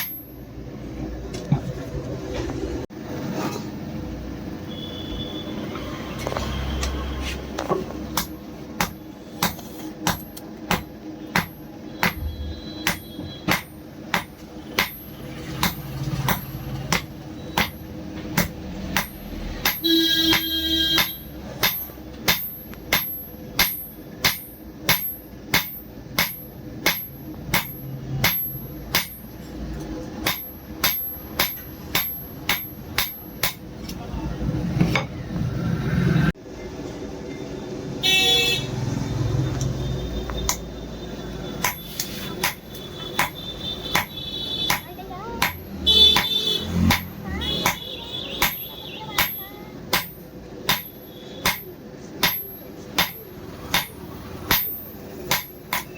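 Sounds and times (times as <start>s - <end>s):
hammer striking steel on anvil: 0.0s - 0.4s, 8.1s - 29.5s, 30.2s - 33.8s, 41.6s - 55.9s.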